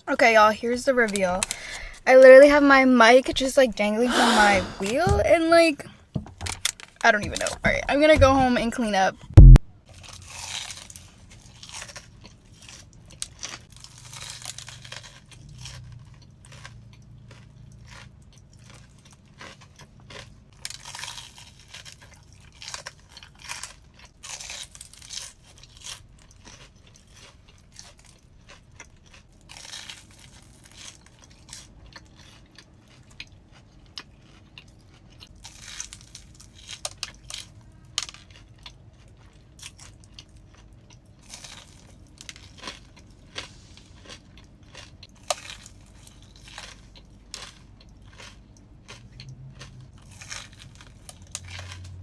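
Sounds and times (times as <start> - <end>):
crunching and chewing: 9.4 - 52.0.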